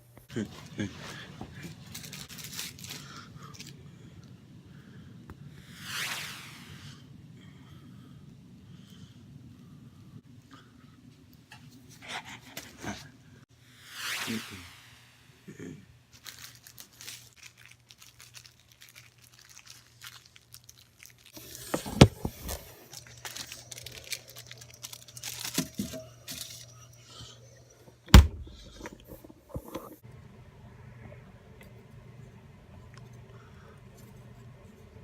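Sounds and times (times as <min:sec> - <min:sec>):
paper crumpling: 0:01.0 - 0:03.7, 0:16.1 - 0:26.8.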